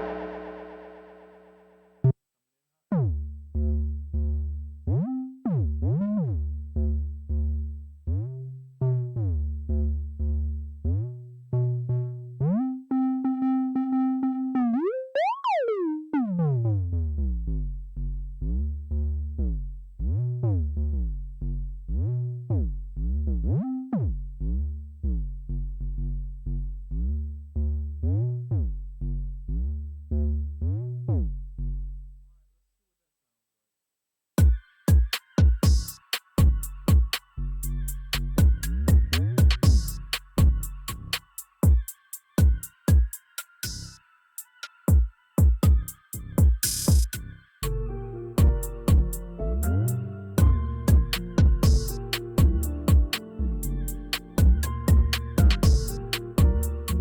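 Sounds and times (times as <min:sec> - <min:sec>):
synth bass line sliding notes: 0:00.0 - 0:01.9, 0:47.6 - 0:57.0.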